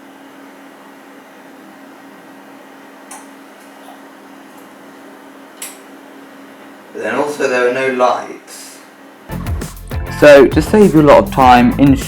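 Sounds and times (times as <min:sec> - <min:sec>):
low electrical hum: 0:00.0 - 0:09.4.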